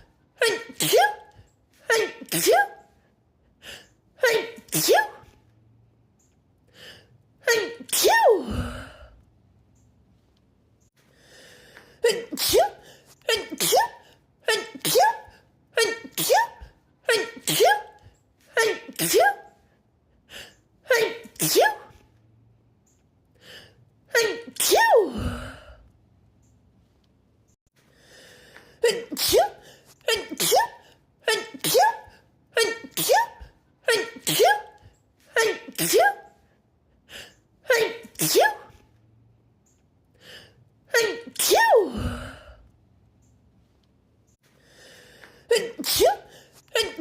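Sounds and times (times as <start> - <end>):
woman sneezing: 0.4 - 2.9, 4.2 - 5.4, 7.4 - 9.1, 12.0 - 19.6, 20.9 - 22.0, 24.1 - 25.8, 28.8 - 36.4, 37.7 - 38.8, 40.9 - 42.6, 45.5 - 47.0.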